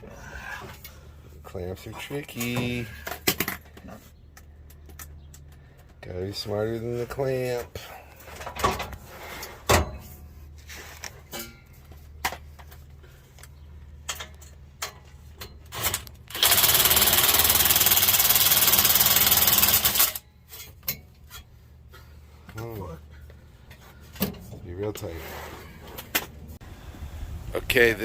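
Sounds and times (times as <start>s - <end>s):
exhaust clamp and tools clinking: 11.0s - 16.2s, 19.5s - 24.6s
power drill running: 16.3s - 20.2s.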